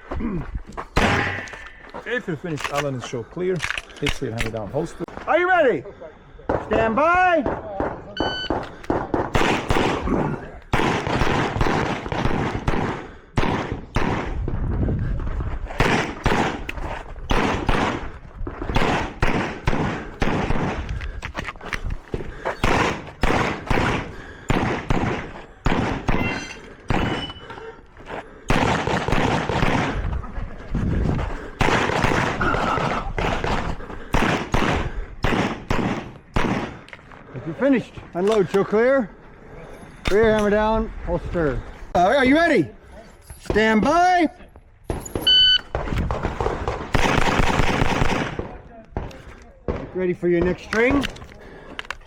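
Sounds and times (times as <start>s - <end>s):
pistol shots echoing: 7.4s - 10.1s, 10.7s - 14.4s, 17.3s - 18.1s, 18.7s - 20.9s, 22.6s - 27.4s, 28.5s - 30.0s, 31.6s - 36.9s, 45.7s - 50.6s.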